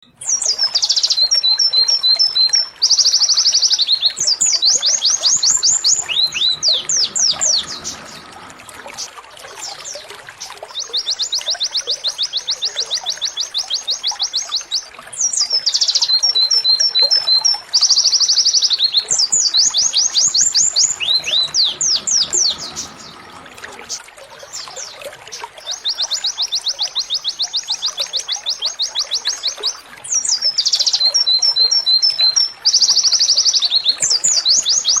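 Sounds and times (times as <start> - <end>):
canary singing trills: 0.0 - 35.0.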